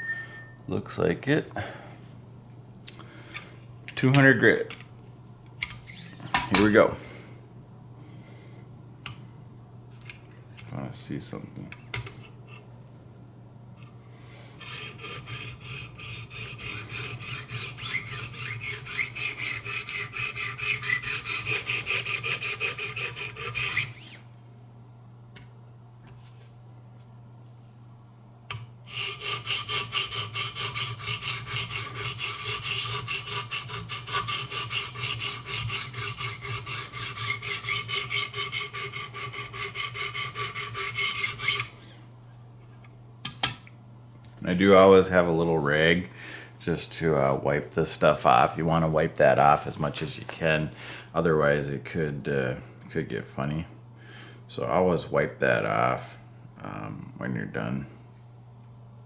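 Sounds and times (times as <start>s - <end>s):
sharpening stones rasping on knife: 14.6s - 24.0s, 28.9s - 41.7s.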